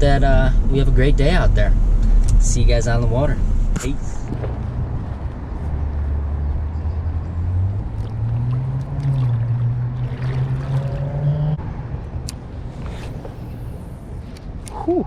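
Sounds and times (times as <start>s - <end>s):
vehicle engine accelerating: 3.6s - 11.8s.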